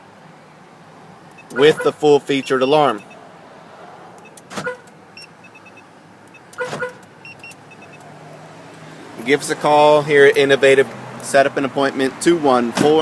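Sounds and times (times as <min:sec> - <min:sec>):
car alarm chirp: 0:01.4 - 0:03.2, 0:04.2 - 0:08.0.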